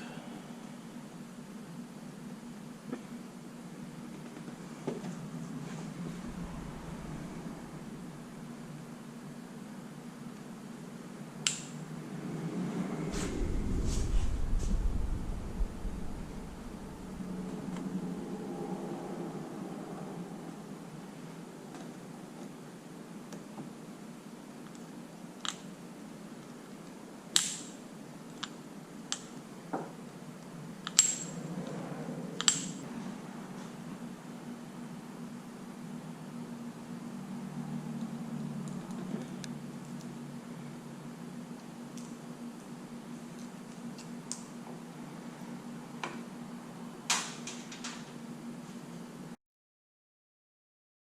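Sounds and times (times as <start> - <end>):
low hum: 3.9 - 9.8, 11.8 - 21.6.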